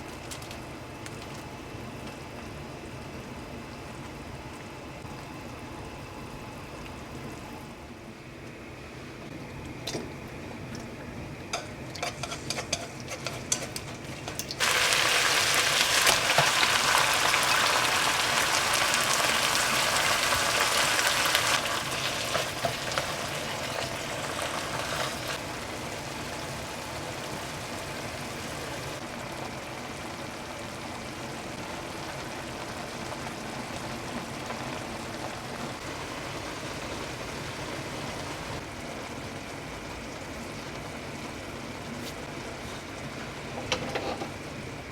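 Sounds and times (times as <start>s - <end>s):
food sizzling in pan: 11.5s - 44.8s.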